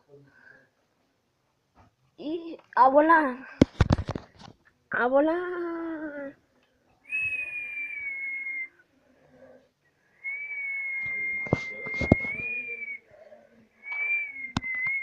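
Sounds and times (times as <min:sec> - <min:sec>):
person whistling steady notes: 0:07.1 - 0:08.7, 0:10.2 - 0:13.0, 0:13.8 - 0:15.0.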